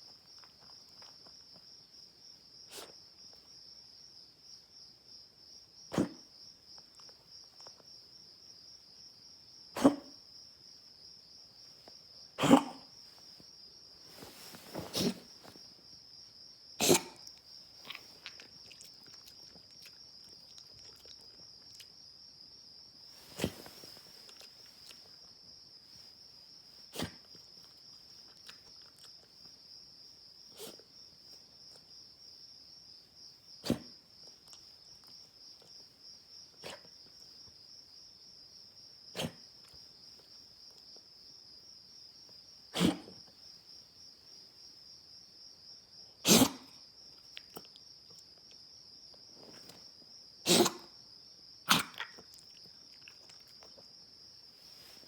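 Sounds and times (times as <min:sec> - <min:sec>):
insects chirring: 0:00.0 - 0:55.0
short harsh coughs: 0:05.9 - 0:06.2, 0:09.8 - 0:10.2, 0:12.4 - 0:12.9, 0:14.6 - 0:15.5, 0:16.8 - 0:17.3, 0:26.9 - 0:27.2, 0:42.7 - 0:43.2, 0:46.2 - 0:46.8, 0:50.4 - 0:51.0, 0:51.7 - 0:52.2.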